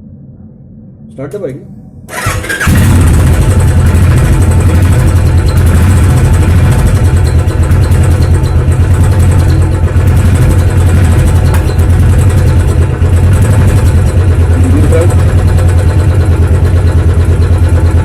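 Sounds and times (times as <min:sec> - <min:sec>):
motorcycle engine idling: 0:02.1 - 0:18.0.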